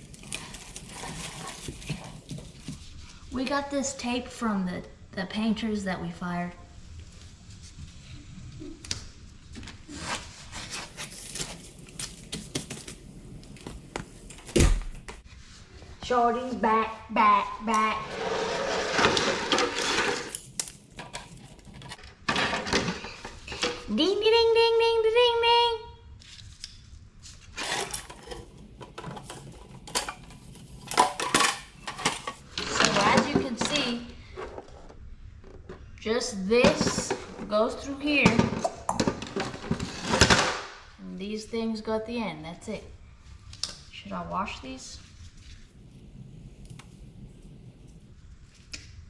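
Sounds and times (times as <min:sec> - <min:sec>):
tape pulled off roll rasping: 0:09.9 - 0:15.2, 0:26.4 - 0:32.8, 0:45.3 - 0:49.0
plastic parts clicking and rattling: 0:19.5 - 0:23.0, 0:27.6 - 0:33.3.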